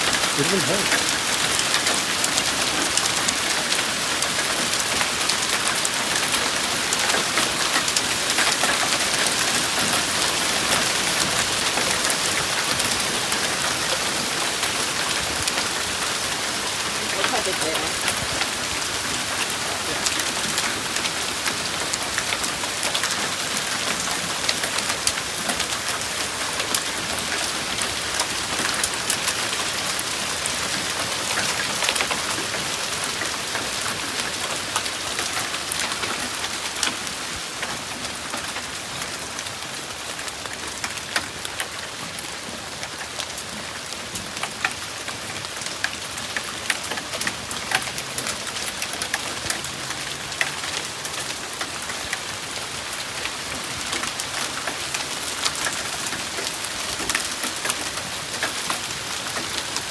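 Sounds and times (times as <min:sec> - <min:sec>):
hail rattling on hard surfaces: 0:00.0 - 0:39.2.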